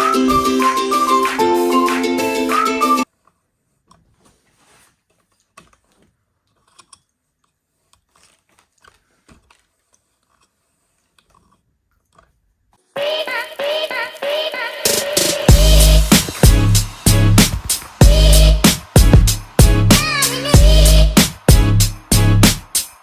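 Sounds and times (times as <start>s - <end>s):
background music: 0.0s - 3.0s, 13.0s - 23.0s.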